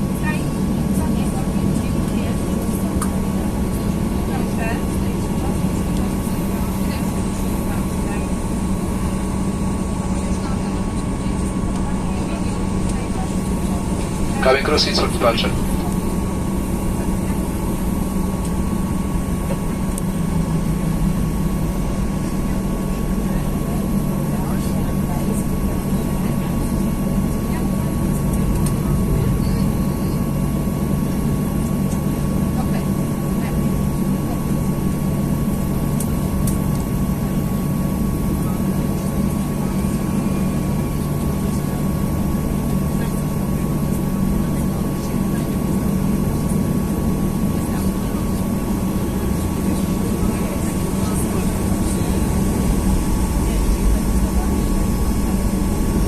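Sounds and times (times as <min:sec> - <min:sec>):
airplane cabin hum: 0:00.0 - 0:56.0
jet engines low drone: 0:00.0 - 0:56.0
thin steady engine whine: 0:00.0 - 0:56.0
thin high jet whine: 0:13.7 - 0:23.0, 0:48.4 - 0:56.0.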